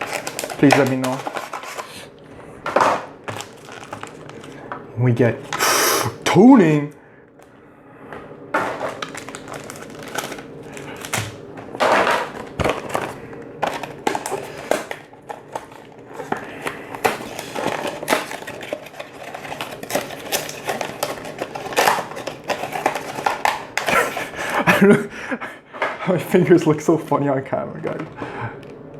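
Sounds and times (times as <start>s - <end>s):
packaging crinkling and tearing: 0.0s - 2.1s, 3.2s - 4.8s, 8.6s - 24.5s.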